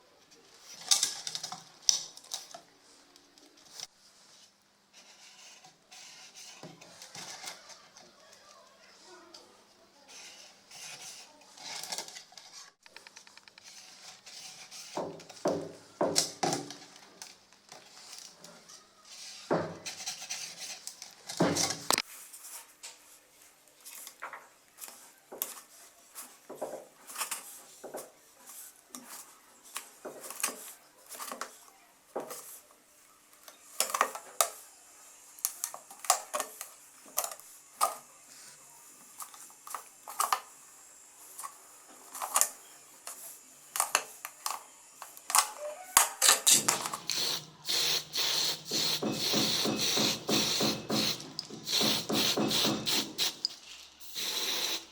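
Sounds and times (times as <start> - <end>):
metal parts scraping: 45.3 - 54.9.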